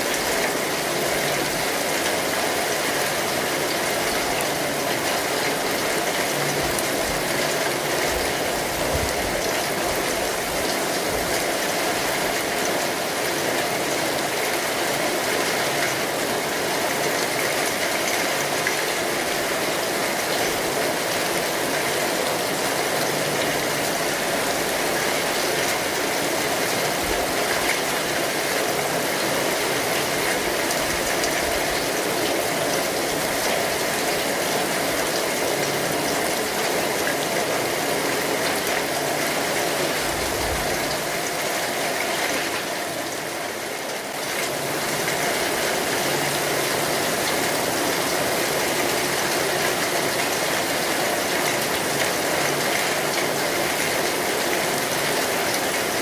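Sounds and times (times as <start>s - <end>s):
rain on an umbrella: 0.0s - 56.0s.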